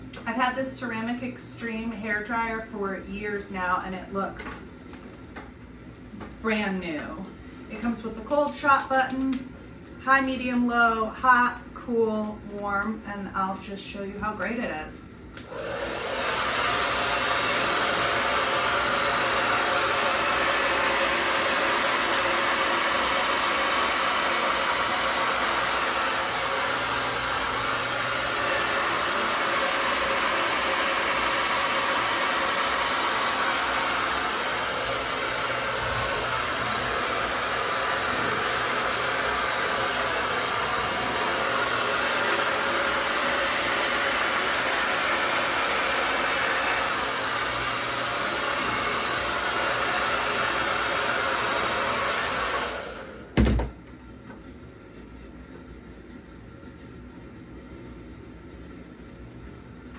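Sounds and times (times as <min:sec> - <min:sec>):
hair dryer blowing: 0:15.4 - 0:53.8.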